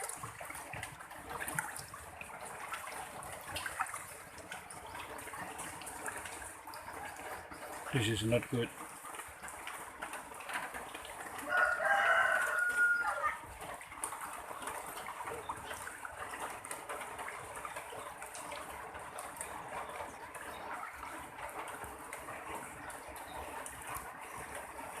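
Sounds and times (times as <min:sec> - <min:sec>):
floodwater rushing: 0:00.0 - 0:25.0
rooster crowing: 0:11.4 - 0:13.4.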